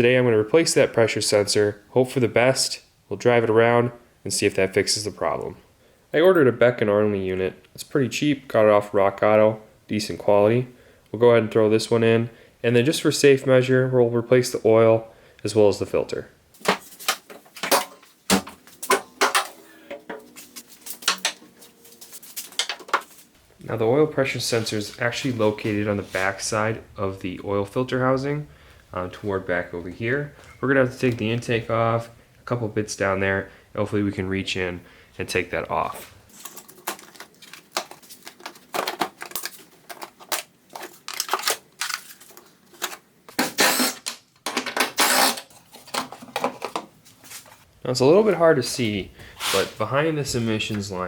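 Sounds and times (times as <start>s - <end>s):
tools and parts clicking: 36.3s - 46.8s.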